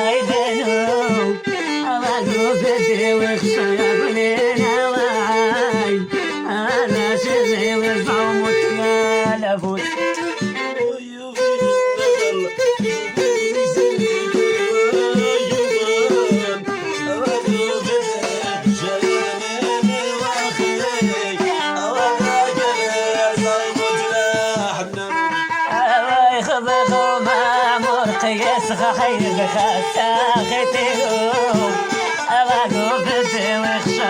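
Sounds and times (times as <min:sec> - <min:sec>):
rhythmic accompaniment: 0:00.0 - 0:34.0
violin melody: 0:00.0 - 0:34.0.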